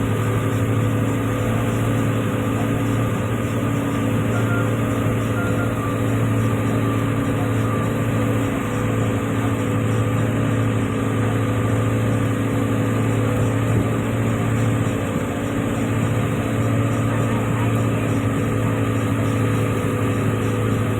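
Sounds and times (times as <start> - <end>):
boat diesel engine humming: 0.0 - 20.9.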